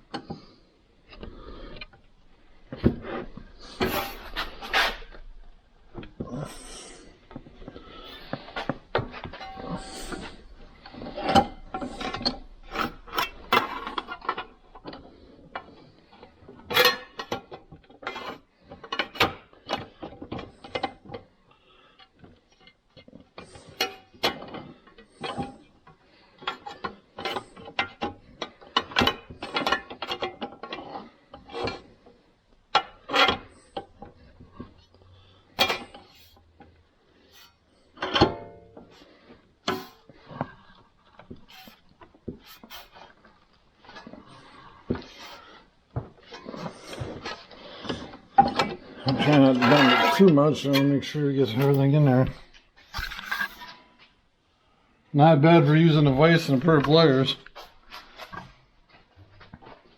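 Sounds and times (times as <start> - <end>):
hand tools clanking on sheet metal: 47.8 - 52.0.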